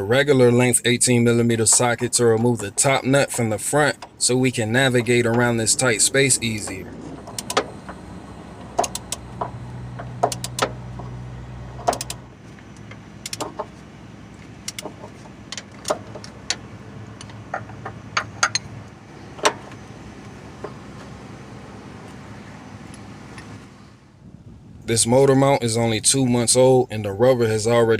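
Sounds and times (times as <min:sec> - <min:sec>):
low steady hum: 0:00.0 - 0:27.9
wrench clinking on metal: 0:17.6 - 0:18.7.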